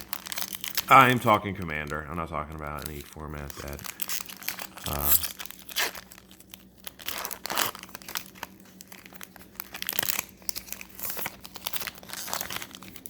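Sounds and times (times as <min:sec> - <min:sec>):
cards being handled: 0:00.0 - 0:06.0
foil wrapper crinkling: 0:00.0 - 0:13.0.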